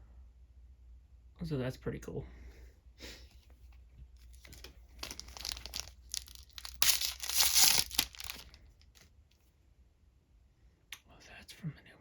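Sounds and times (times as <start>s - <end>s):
foil pack crinkling and tearing: 4.4s - 8.7s.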